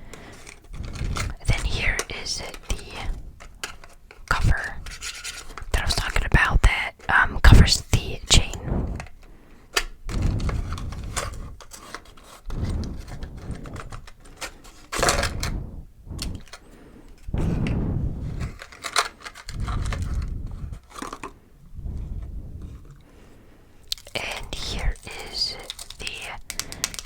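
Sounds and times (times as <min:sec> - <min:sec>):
low muffled rumbles: 0:00.7 - 0:03.5, 0:07.4 - 0:09.2, 0:10.0 - 0:11.6, 0:12.5 - 0:14.4, 0:15.0 - 0:18.7, 0:19.5 - 0:23.2
plastic pieces clicking: 0:24.0 - 0:27.0.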